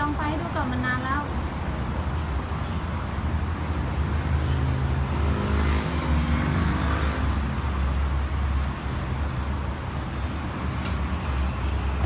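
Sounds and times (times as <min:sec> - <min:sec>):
low traffic rumble: 0:00.0 - 0:12.0
motor vehicle passing by: 0:03.5 - 0:09.6.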